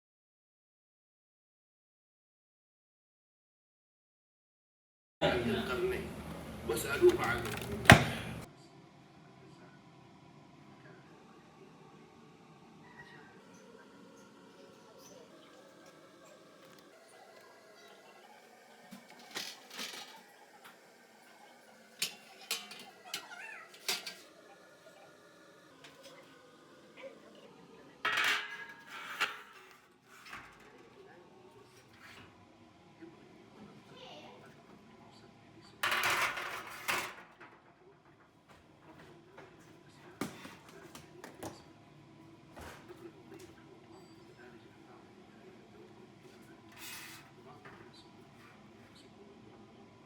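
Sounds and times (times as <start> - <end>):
kitchen items clacking: 6.8 - 8.5, 18.9 - 20.4, 22.0 - 24.4, 28.0 - 31.1, 35.8 - 38.2.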